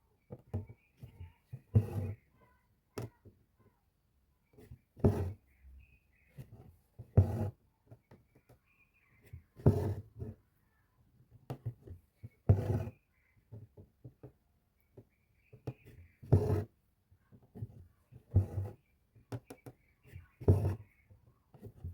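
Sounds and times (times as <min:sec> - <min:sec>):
needle and thread rasping through fabric: 0:00.5 - 0:02.3, 0:04.7 - 0:05.5, 0:06.4 - 0:07.6, 0:09.2 - 0:10.4, 0:11.5 - 0:13.8, 0:15.6 - 0:16.7, 0:17.5 - 0:21.9.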